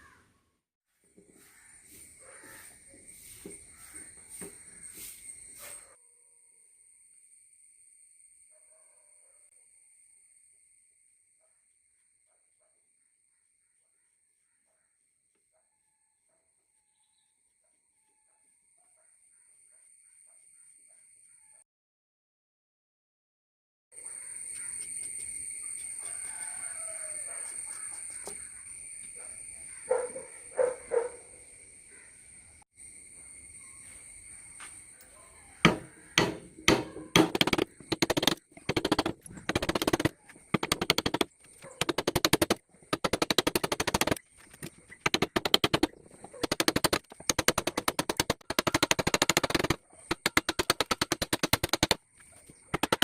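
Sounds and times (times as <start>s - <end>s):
chisel striking wood: 35.7s - 52.0s, 52.8s - 53.0s.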